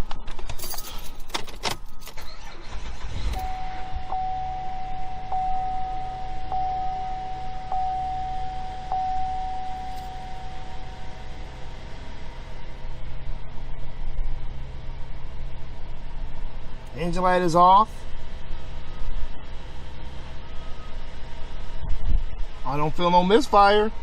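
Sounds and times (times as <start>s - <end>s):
ignition clicks: 0.0s - 10.9s
car engine starting and idling: 0.0s - 24.0s
electronic warning tone with ticks: 3.4s - 11.0s.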